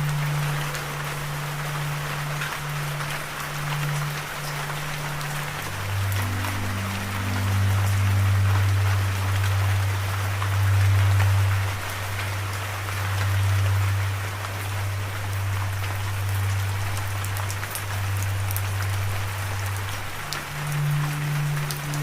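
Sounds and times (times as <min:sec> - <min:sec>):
low steady hum: 0:00.0 - 0:22.0
steady rain falling: 0:00.0 - 0:22.0.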